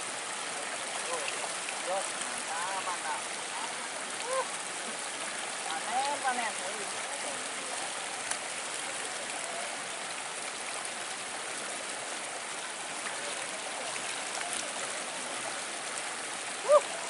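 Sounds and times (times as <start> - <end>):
river water rushing: 0.0 - 17.0
faint ticks: 8.2 - 8.5.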